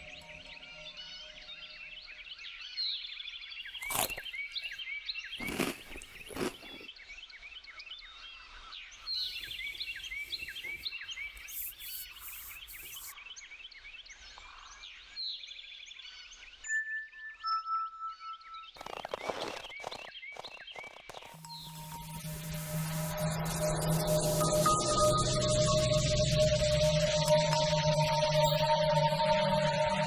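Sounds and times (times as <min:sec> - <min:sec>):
rustling crunching noises: 0:03.8 - 0:04.7, 0:05.4 - 0:06.9, 0:18.8 - 0:21.4
small birds chirping and trilling: 0:05.4 - 0:06.9, 0:08.4 - 0:16.6, 0:18.8 - 0:21.8
hissing rustle: 0:09.2 - 0:13.1.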